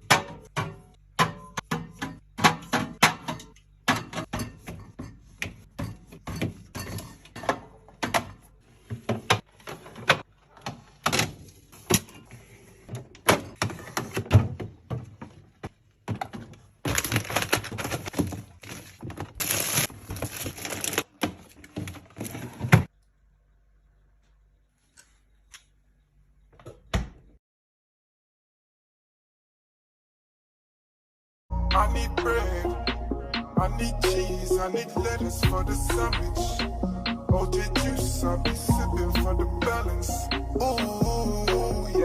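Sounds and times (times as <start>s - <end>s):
food packages clattering: 0.0s - 22.9s.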